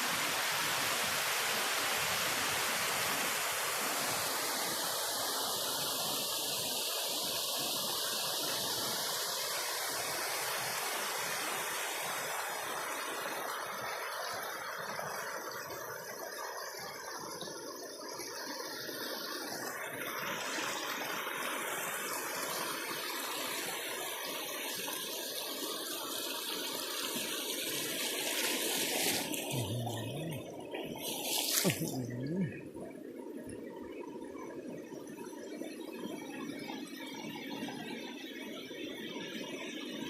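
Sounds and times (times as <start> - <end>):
waterfall rushing: 0.0 - 14.2, 26.0 - 32.8.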